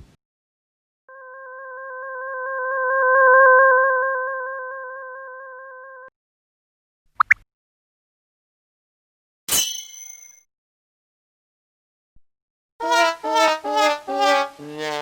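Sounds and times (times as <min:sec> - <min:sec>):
synthesized chord with tremolo: 0:12.8 - 0:15.0.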